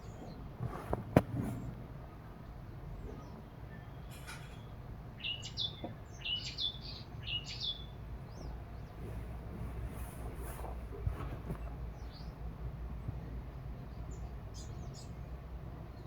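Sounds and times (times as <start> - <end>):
bird chirping: 2.6 - 9.1.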